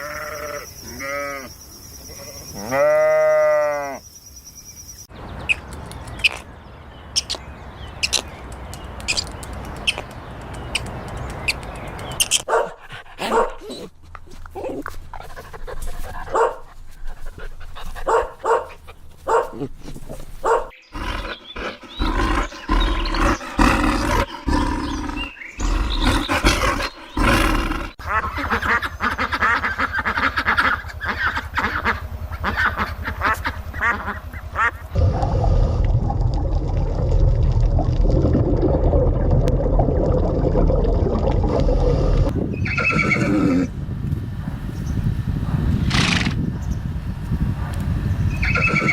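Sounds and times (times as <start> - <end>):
dog barking: 12.5 - 13.9, 16.3 - 16.7, 18.0 - 19.7, 20.4 - 20.8.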